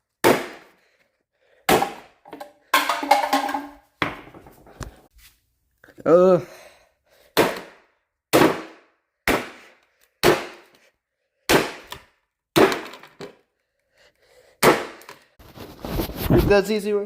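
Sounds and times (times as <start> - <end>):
sledgehammer striking a can: 7.4 - 9.6, 12.6 - 13.2.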